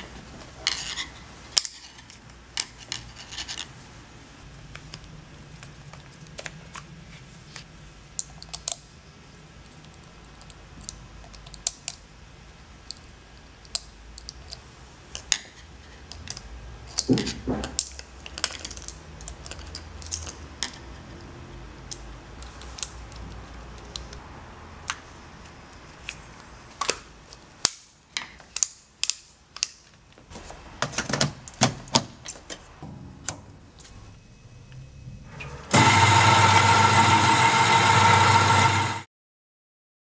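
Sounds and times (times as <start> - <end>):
loud mechanical noise: 32.8 - 39.1.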